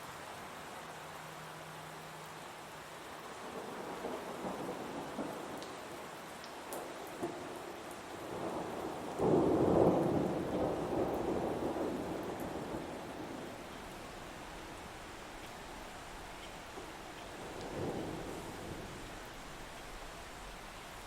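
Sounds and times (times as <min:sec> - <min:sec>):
steady rain: 0:00.0 - 0:21.0
thunder rumbling: 0:03.4 - 0:05.6, 0:08.2 - 0:14.0, 0:17.4 - 0:19.7.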